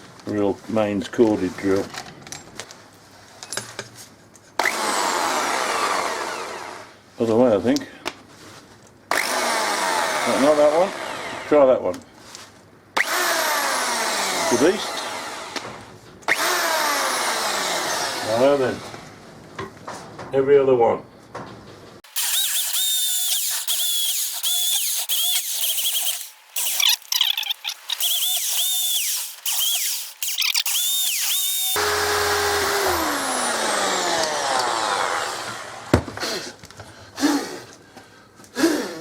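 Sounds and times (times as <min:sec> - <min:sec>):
drill motor winding down: 0:04.6 - 0:06.9, 0:13.0 - 0:15.6, 0:16.3 - 0:19.0, 0:22.1 - 0:36.4
electric drill boring into wood: 0:04.6 - 0:07.0, 0:09.1 - 0:11.5, 0:13.0 - 0:19.0, 0:22.0 - 0:36.4.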